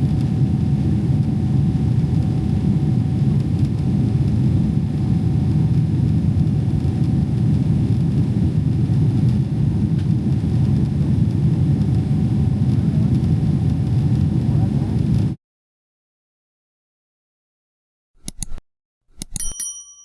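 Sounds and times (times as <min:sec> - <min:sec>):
faint steady hum: 0:00.0 - 0:15.3
airplane cabin roar: 0:00.0 - 0:15.4.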